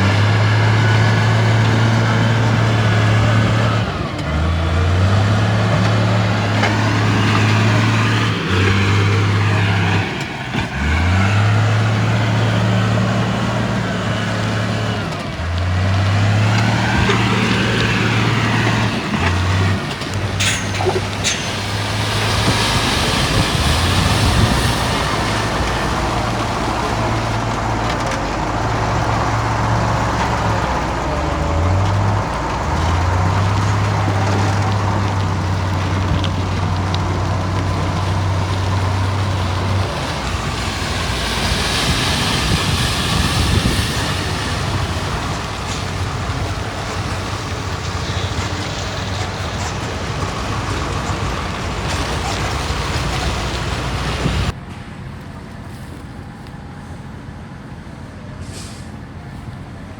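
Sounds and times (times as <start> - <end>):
diesel engine of heavy machinery: 0.0 - 59.9
noise of machines working: 16.5 - 34.7.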